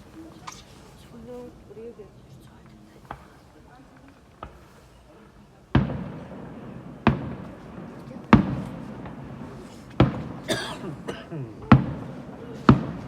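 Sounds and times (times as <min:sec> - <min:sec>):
fireworks bangs with rumbling echo: 0:02.9 - 0:13.0.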